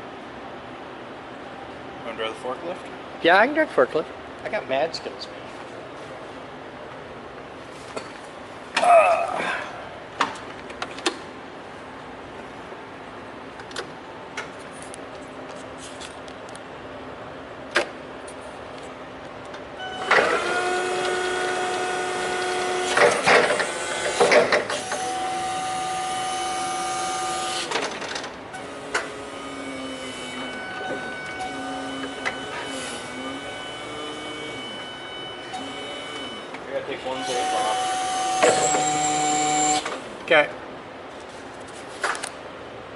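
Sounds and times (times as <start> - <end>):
clunks: 19.5 - 25.1, 27.6 - 37.4, 38.0 - 40.1
forklift motor whine: 19.6 - 40.2
faint wavering hum: 28.4 - 39.8.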